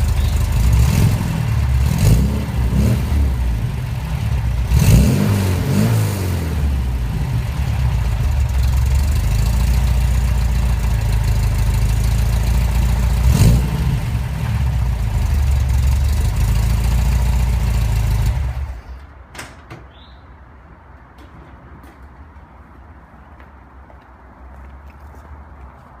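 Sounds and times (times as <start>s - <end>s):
car engine idling: 0.0s - 19.1s.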